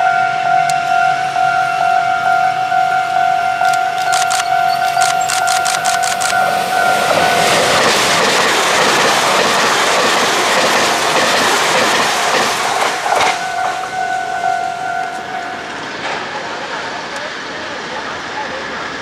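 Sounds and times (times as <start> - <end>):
steady high tone: 0.0 - 8.3, 12.9 - 19.0
train passing at speed: 0.0 - 19.0
wheels clacking over rail joints: 3.6 - 14.5, 15.2 - 19.0.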